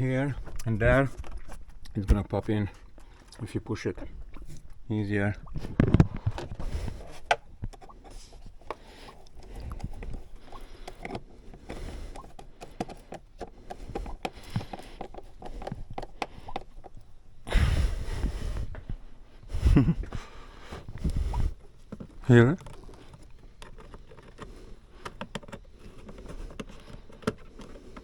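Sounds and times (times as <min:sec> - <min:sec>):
small clicks and knocks: 0:05.6 - 0:17.1, 0:21.8 - 0:28.0.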